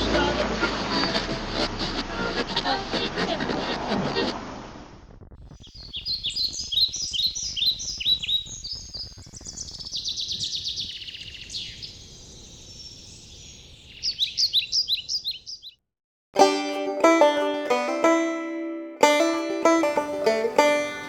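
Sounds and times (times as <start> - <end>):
songbirds chirping and trilling: 5.6 - 15.8
plucked banjo music: 16.4 - 21.0.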